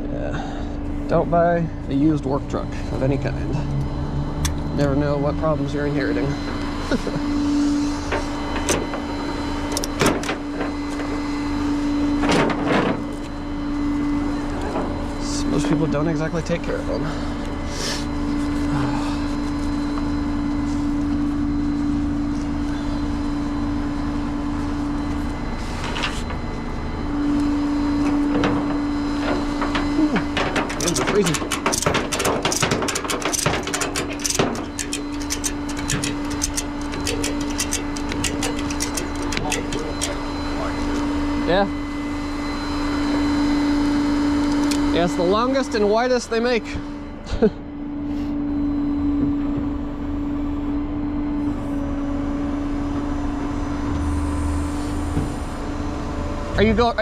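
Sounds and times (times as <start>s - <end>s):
steady whine: 0.0s - 57.0s
vehicle engine humming: 0.0s - 57.0s
sharp clanks and rattles: 6.4s - 11.2s, 12.2s - 13.3s, 28.0s - 41.1s
rapid mechanical clicking: 28.6s - 41.0s.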